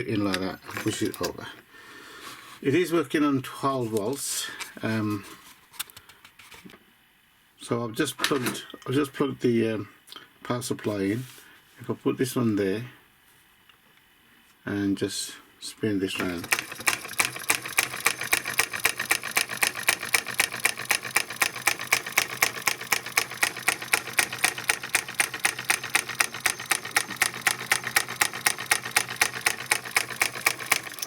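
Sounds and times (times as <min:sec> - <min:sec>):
solenoid engine clacking: 0:16.2 - 0:31.0.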